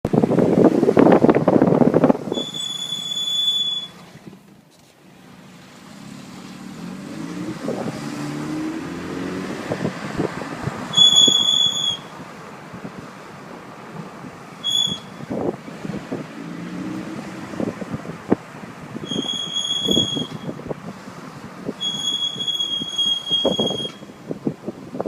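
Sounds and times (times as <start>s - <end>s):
road noise: 0.0s - 25.0s
brake pads squealing: 2.0s - 4.1s, 10.9s - 12.2s, 14.6s - 15.5s, 19.0s - 20.7s, 21.6s - 24.2s
car engine rising in pitch: 5.2s - 22.2s.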